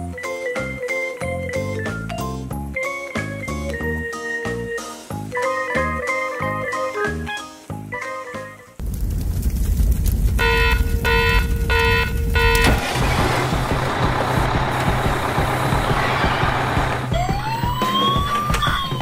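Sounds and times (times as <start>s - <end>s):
noisy engine rumble: 8.8s - 17.1s
short horn beeps: 10.4s - 12.8s
siren wailing: 10.4s - 12.9s, 15.8s - 19.0s.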